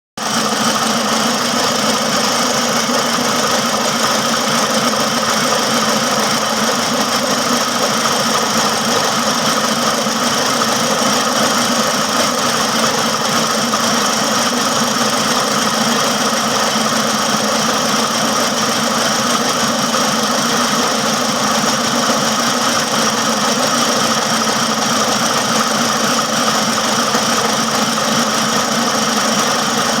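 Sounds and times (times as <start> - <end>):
engine running steadily: 0.2 - 30.0.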